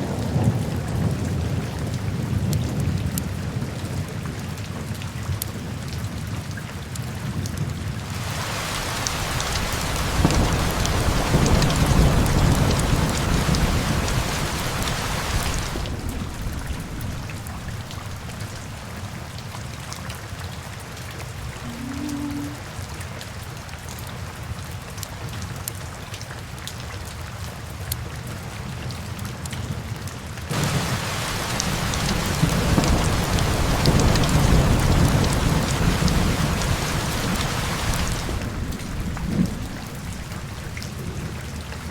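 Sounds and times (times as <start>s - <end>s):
steady rain: 0.0s - 41.9s
thunder rumbling: 8.1s - 19.7s, 21.3s - 22.6s, 30.5s - 41.9s.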